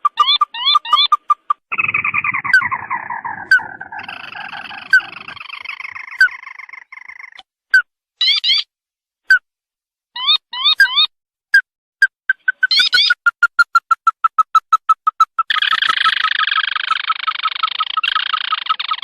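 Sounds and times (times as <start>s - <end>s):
crake calls: 0.0s - 7.4s, 12.3s - 19.0s.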